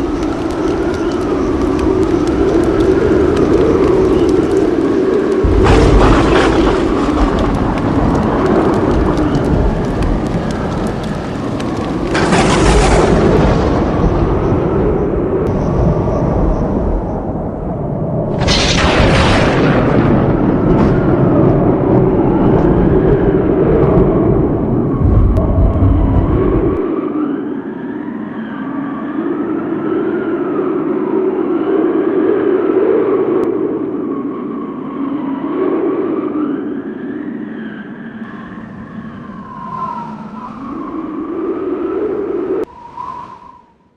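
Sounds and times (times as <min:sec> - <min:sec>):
thunder crack: 0:00.0 - 0:17.3, 0:18.3 - 0:26.9
rolling thunder rumble: 0:00.0 - 0:27.0.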